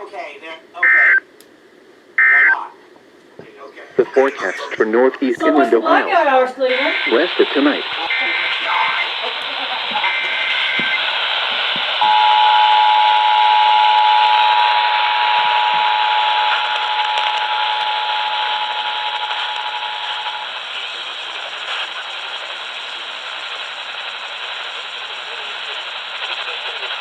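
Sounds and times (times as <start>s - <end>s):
radio static hiss: 0.1s - 1.2s, 2.1s - 12.2s, 14.3s - 27.0s
two-tone attention signal: 12.0s - 20.4s.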